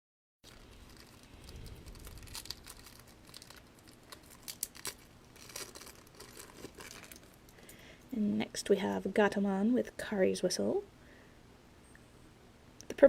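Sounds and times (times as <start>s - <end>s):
plastic packaging crinkling: 0.4s - 7.7s
sharp crackles: 0.4s - 7.8s.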